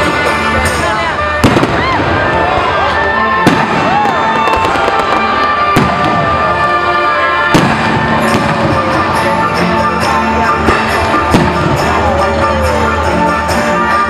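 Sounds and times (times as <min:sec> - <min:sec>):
fireworks booming: 0:00.0 - 0:13.1
fireworks crackling: 0:00.0 - 0:14.0
loud music: 0:00.0 - 0:14.0.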